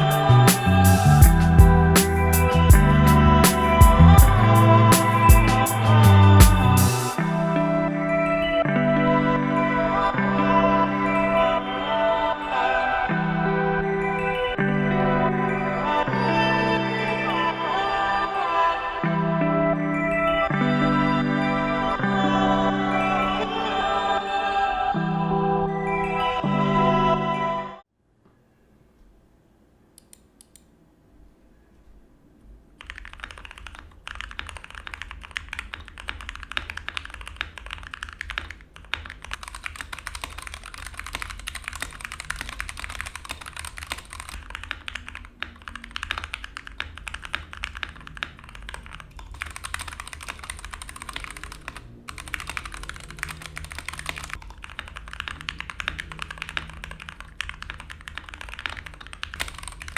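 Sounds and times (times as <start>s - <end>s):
typing on mechanical keyboard: 32.8s - 59.9s.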